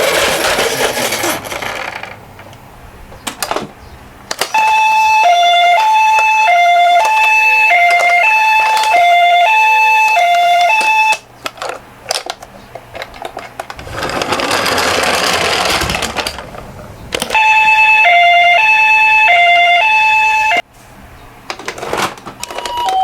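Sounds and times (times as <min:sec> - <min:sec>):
toy car rolling rattle: 0:00.0 - 0:02.5, 0:11.4 - 0:17.4
two-tone ambulance siren: 0:04.6 - 0:11.2, 0:17.3 - 0:20.6.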